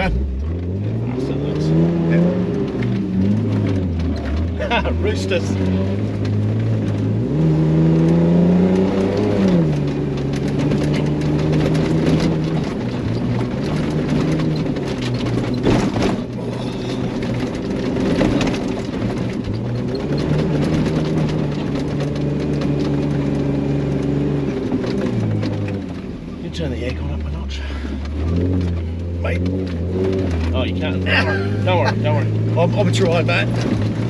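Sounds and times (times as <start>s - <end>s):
engine revving: 0.0s - 34.0s
sharp knocks and rattles: 8.0s - 30.9s, 32.2s - 34.0s.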